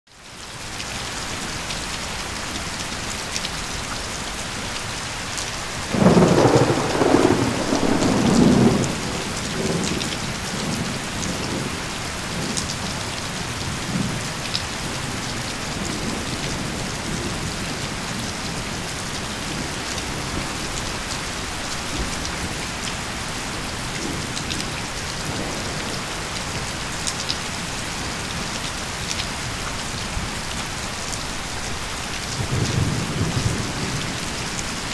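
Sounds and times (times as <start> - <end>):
heavy rain hissing: 2.9 - 34.9
thunder clap and rumble: 5.8 - 29.6, 31.7 - 34.9.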